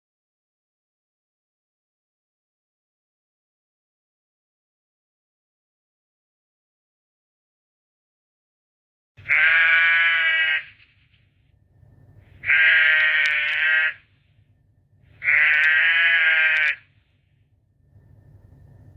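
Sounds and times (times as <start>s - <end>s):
sheep bleating: 9.2s - 10.9s, 12.4s - 14.1s, 15.2s - 16.9s.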